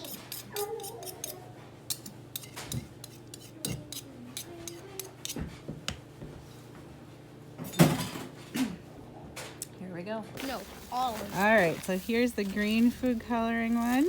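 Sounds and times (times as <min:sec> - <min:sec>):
spoon stirring in plastic cup: 0:11.2 - 0:14.0.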